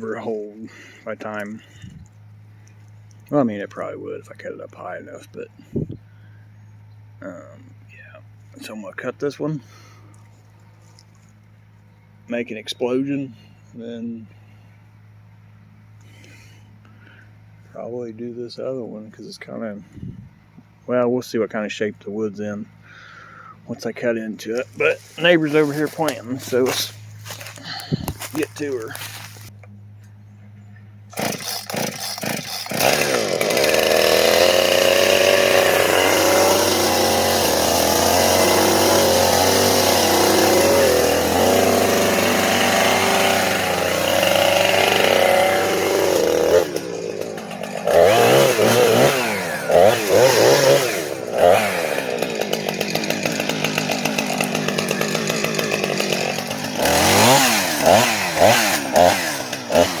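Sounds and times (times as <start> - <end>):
chainsaw revving: 0.0 - 1.9, 24.6 - 29.5, 31.1 - 60.0.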